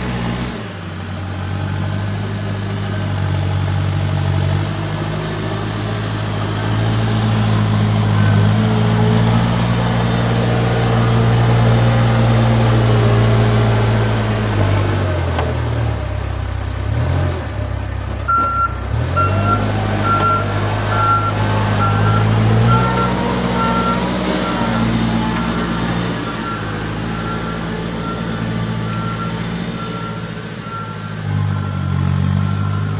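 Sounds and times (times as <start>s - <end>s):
diesel engine under load: 0.0s - 32.9s
reversing alarm beeping: 18.3s - 32.9s.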